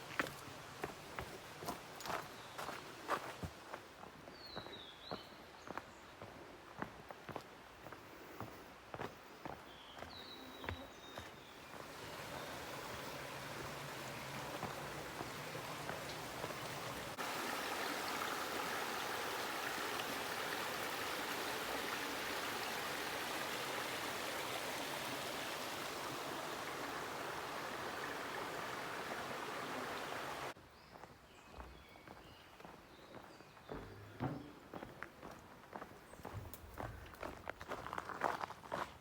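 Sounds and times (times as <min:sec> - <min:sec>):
water rushing: 0:11.6 - 0:30.6.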